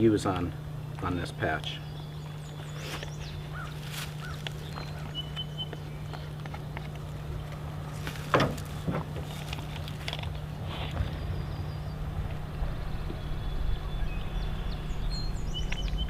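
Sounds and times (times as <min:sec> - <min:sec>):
steady low hum: 0:00.0 - 0:16.0
handling knocks and rustles: 0:02.9 - 0:11.2
high bird-like chirp: 0:12.7 - 0:16.0.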